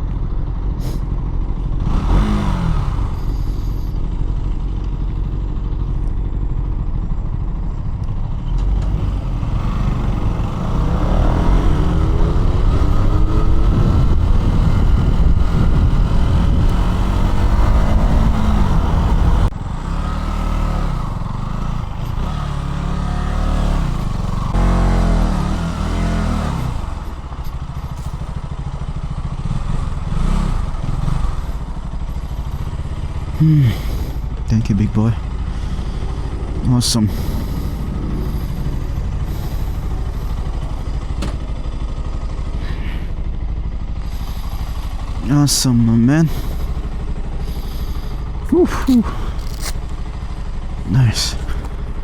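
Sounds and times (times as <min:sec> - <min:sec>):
motorcycle engine revving: 0:00.0 - 0:06.0, 0:08.2 - 0:52.0
wind noise: 0:12.2 - 0:19.5.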